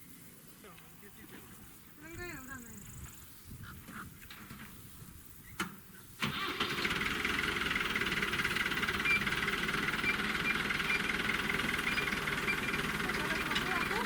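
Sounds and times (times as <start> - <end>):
engine starting and running: 6.2 - 14.0.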